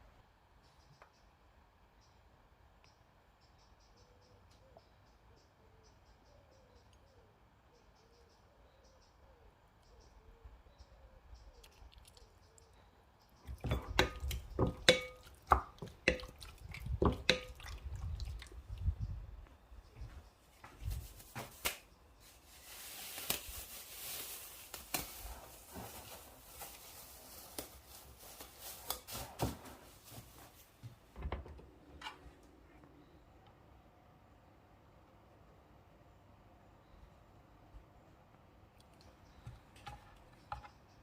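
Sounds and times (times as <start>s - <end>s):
knocks and clinks of dishes: 13.6s - 16.3s.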